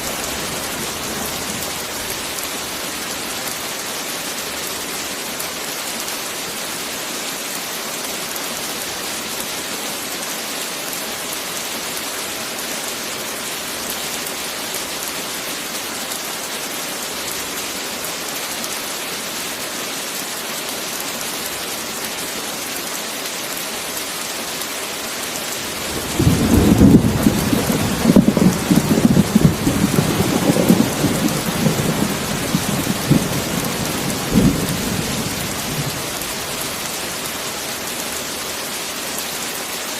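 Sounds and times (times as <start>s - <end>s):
heavy rain hissing: 0.0s - 39.9s
thunder rumbling: 25.7s - 36.9s.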